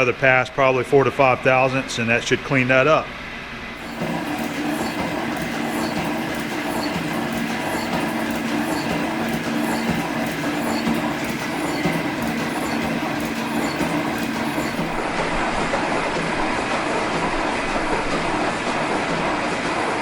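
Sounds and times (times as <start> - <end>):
metal shaper ram stroking: 3.8 - 15.1.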